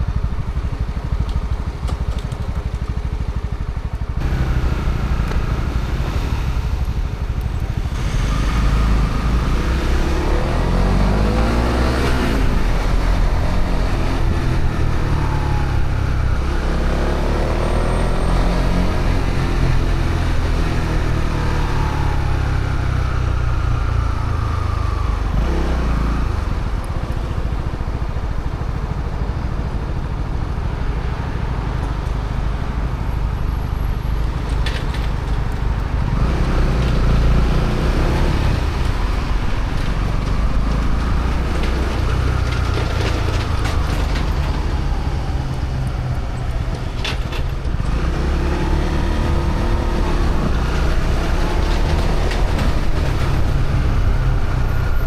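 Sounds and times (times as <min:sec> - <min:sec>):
wind and road noise: 0:00.0 - 0:55.0
motorcycle engine accelerating: 0:00.1 - 0:26.8, 0:35.9 - 0:55.0.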